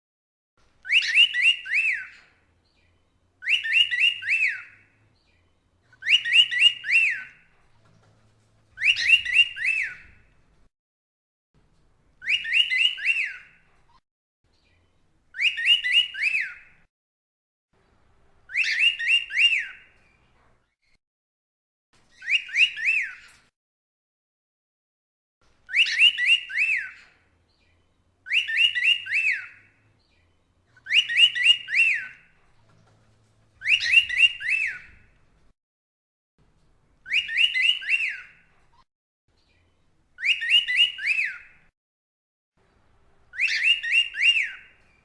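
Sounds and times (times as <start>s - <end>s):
cockatiel whistling: 0.8s - 2.3s, 3.4s - 4.9s, 5.9s - 7.5s, 8.8s - 10.3s, 12.2s - 13.6s, 15.4s - 16.7s, 18.5s - 20.0s, 22.1s - 23.3s, 25.7s - 27.2s, 28.2s - 29.7s, 30.8s - 32.3s, 33.6s - 35.1s, 37.0s - 38.4s, 40.2s - 41.7s, 43.3s - 44.9s.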